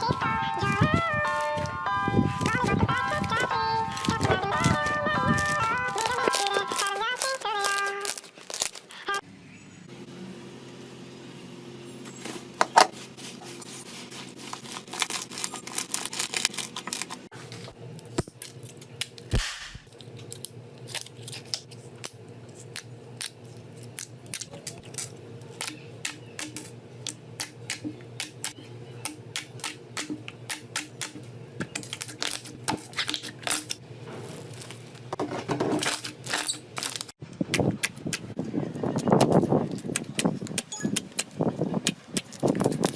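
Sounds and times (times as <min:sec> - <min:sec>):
steady low hum: 0:00.0 - 0:08.5.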